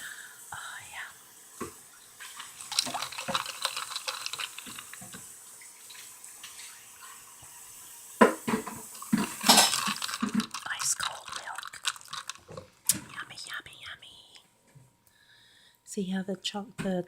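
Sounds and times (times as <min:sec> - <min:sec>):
water running at sink: 0:01.3 - 0:13.1
dishes clinking: 0:08.5 - 0:10.5.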